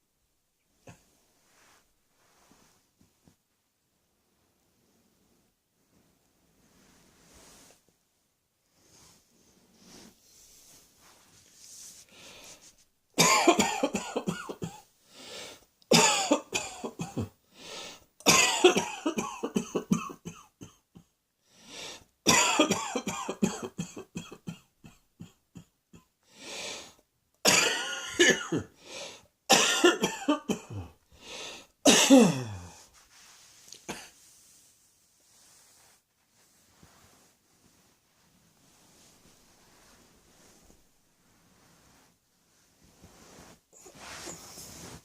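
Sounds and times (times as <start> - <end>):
person coughing: 13.2 - 14.8, 15.9 - 17.4, 18.2 - 20.8, 22.3 - 25.7, 27.5 - 28.8, 29.5 - 31.0, 31.9 - 32.8, 33.8 - 34.1.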